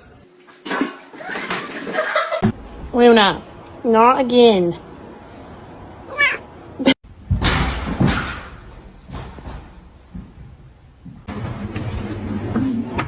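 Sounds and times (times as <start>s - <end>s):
cat meowing: 6.1s - 6.5s.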